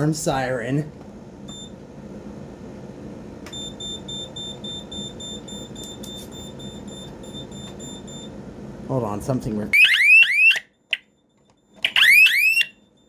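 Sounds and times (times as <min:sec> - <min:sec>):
rapid electronic alarm beeping: 0:09.8 - 0:10.6, 0:11.8 - 0:12.8.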